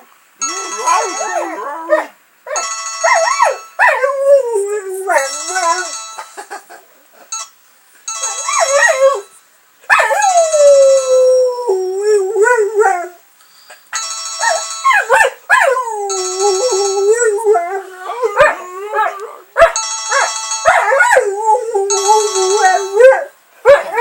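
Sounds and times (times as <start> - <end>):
phone ringtone: 0.4 - 1.6, 2.6 - 3.8, 5.1 - 6.4, 7.3 - 9.4, 13.5 - 15.0, 16.1 - 17.4, 19.8 - 21.0, 21.9 - 23.0
puppy howling: 15.0 - 24.0.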